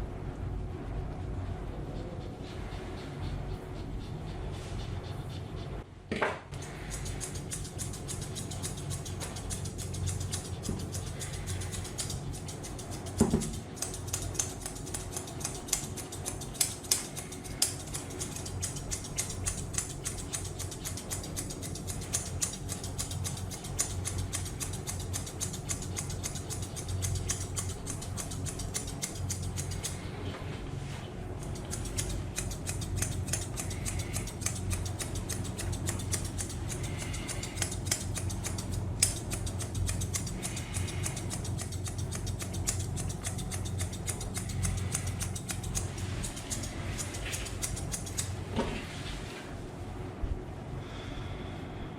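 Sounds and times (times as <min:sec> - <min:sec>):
low hum: 0:00.0 - 0:51.9
scissors snipping fur: 0:06.6 - 0:30.1, 0:31.4 - 0:48.4.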